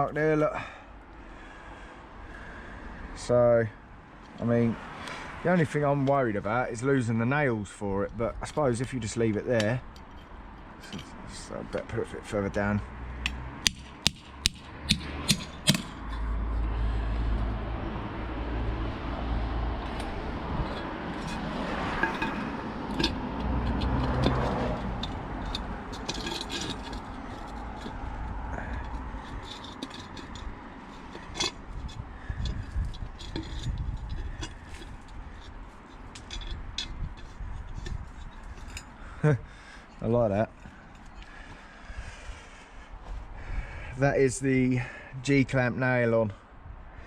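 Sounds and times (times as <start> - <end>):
metal scraping: 5.4 - 42.2
metal clamp clinking: 8.4 - 11.2, 19.8 - 39.0.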